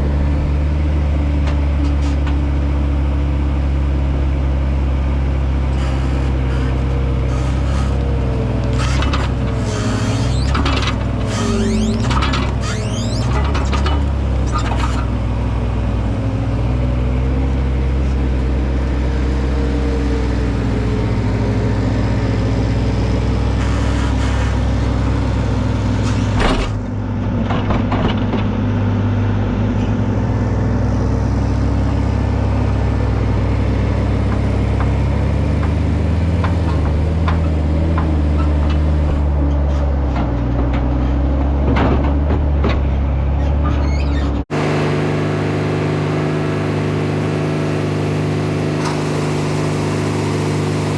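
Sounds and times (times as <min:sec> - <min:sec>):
farm machinery engine running: 0:00.0 - 0:50.9
knocks and clunks: 0:07.3 - 0:15.2, 0:26.0 - 0:28.6, 0:34.2 - 0:44.4.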